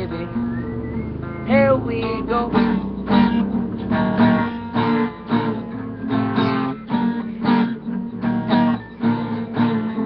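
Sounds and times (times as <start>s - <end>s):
acoustic guitar strumming: 0.0s - 10.0s.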